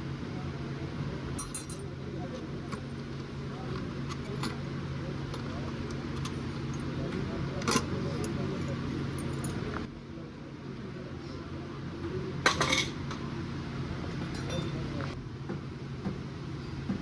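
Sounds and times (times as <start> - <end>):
steady low hum: 0.0 - 17.0
metal parts clinking: 1.4 - 1.8.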